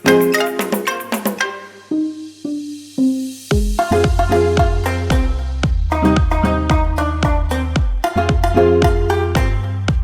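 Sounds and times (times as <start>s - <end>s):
plucked notes: 0.0s - 10.0s
deep bass and beat: 2.5s - 10.0s.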